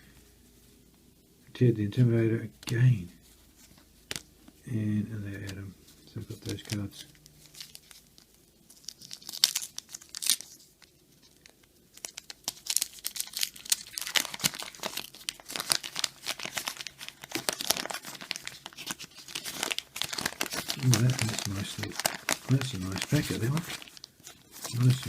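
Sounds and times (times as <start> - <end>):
paper wrapper tearing and crinkling: 4.0 - 4.3, 6.3 - 25.0.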